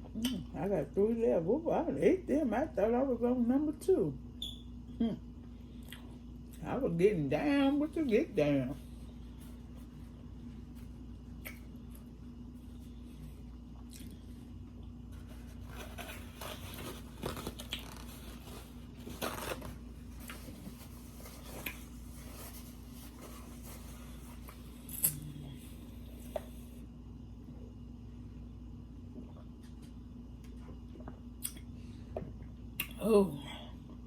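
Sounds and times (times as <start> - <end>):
steady low hum: 0.0 - 34.0
chewing and crunching food: 11.3 - 15.0, 16.2 - 18.5.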